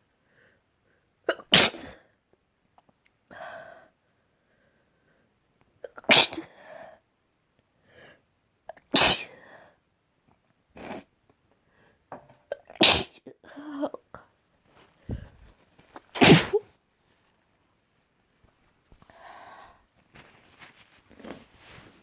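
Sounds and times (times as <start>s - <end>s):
person sneezing: 1.3s - 2.0s, 5.9s - 6.5s, 9.0s - 9.4s, 12.8s - 13.2s, 16.1s - 16.7s.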